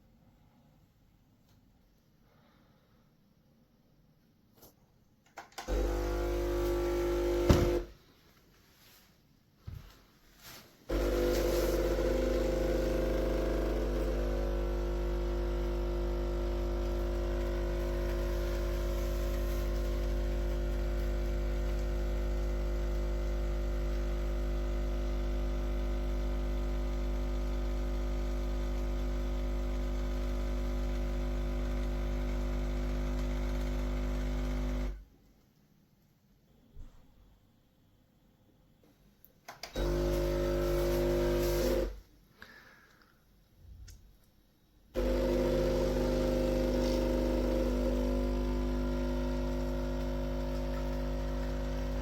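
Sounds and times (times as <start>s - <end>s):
espresso pump buzzing hum: 5.7s - 7.9s, 10.9s - 35.0s, 39.8s - 42.0s, 45.0s - 52.0s.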